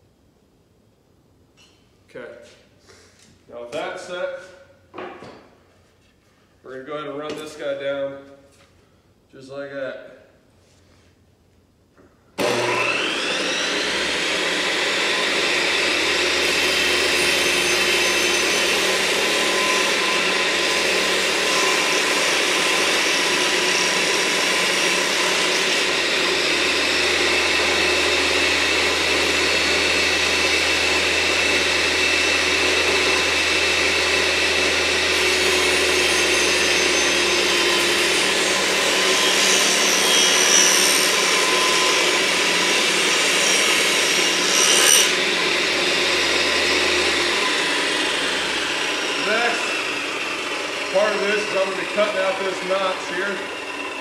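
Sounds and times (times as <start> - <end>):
board cut by saw blade: 12.4 - 54.0
table saw running: 12.4 - 54.0.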